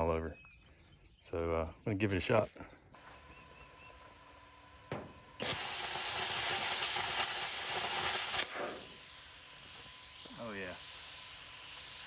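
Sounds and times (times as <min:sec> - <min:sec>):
plasma cutter hissing: 0:05.4 - 0:12.0.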